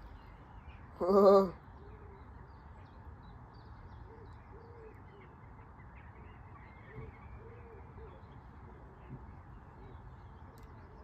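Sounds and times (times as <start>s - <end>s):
small birds chirping: 0.0s - 11.0s
low hooting bird calls: 3.9s - 11.0s.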